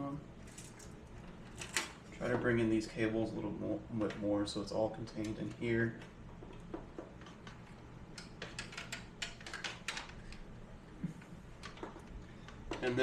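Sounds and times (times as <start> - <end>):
cables and plugs clicking: 5.0 - 13.0.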